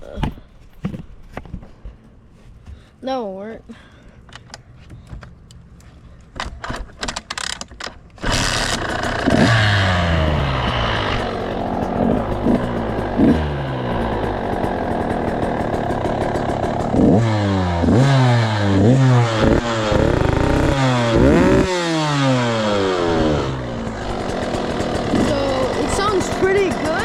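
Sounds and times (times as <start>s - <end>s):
motorcycle engine revving: 8.2s - 27.0s.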